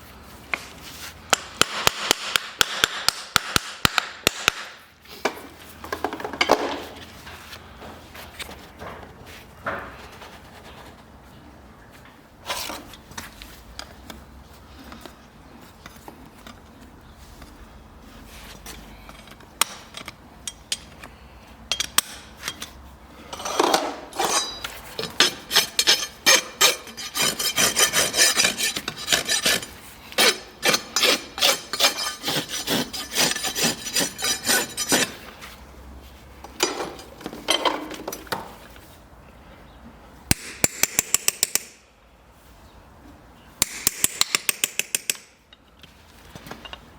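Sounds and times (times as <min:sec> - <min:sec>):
rasp filing hoof: 0:24.2 - 0:35.4.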